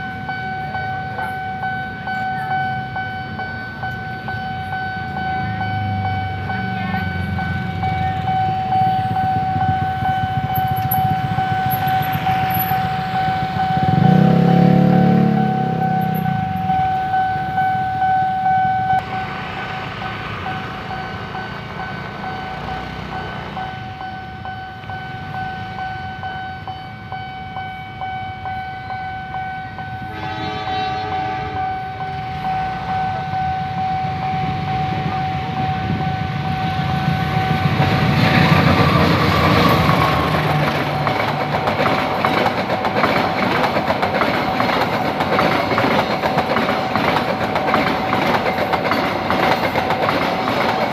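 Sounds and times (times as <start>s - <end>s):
level crossing warning siren: 0.0s - 50.9s
train wheels clattering over rails: 3.8s - 17.4s, 36.5s - 50.9s
train horn blast: 13.7s - 16.6s, 30.0s - 37.8s.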